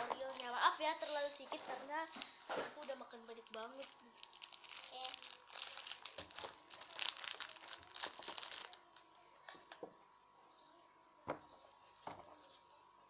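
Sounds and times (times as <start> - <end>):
plastic packet crinkling: 0.0 - 9.2.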